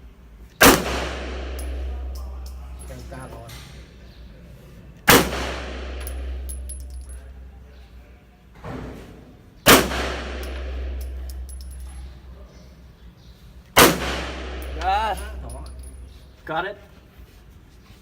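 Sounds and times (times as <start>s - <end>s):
pistol shots echoing: 0.6s - 3.4s, 5.1s - 7.2s, 9.7s - 12.2s, 13.8s - 16.0s
short high clinks: 6.0s - 7.5s, 10.4s - 12.8s, 14.6s - 16.5s.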